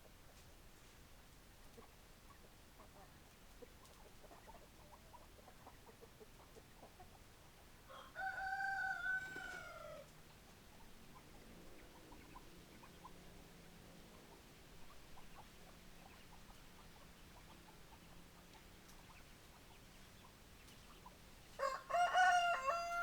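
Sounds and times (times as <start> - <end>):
chickens clucking: 0.0 - 23.0
rooster crowing: 7.9 - 10.1, 21.6 - 23.0.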